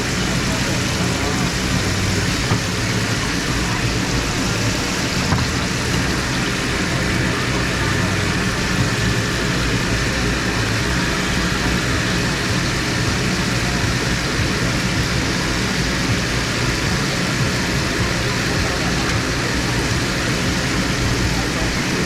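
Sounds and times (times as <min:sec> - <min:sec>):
constant hiss: 0:00.0 - 0:22.0
indistinct voices: 0:00.0 - 0:22.0
low mechanical hum: 0:00.0 - 0:22.0.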